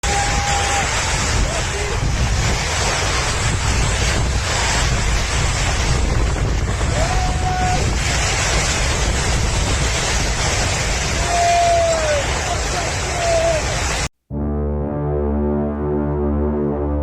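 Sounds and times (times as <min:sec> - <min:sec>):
rushing water: 0:00.0 - 0:14.1
wind rumbling on microphone: 0:00.0 - 0:14.1.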